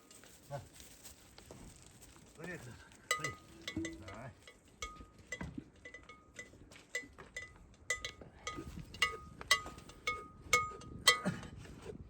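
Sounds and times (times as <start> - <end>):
small metal bell clinking: 3.1 - 11.3.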